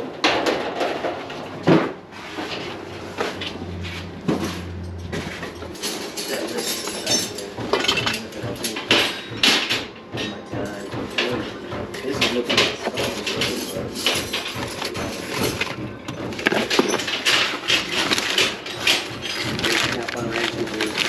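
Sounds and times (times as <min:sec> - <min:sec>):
low steady hum: 0:02.8 - 0:07.7
metal hand tools clinking: 0:04.7 - 0:08.8.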